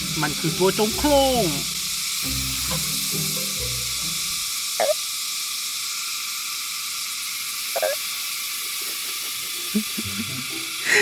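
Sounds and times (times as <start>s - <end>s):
steady high hiss: 0.0s - 11.0s
toad bark-like call: 4.8s - 5.0s, 7.7s - 8.0s.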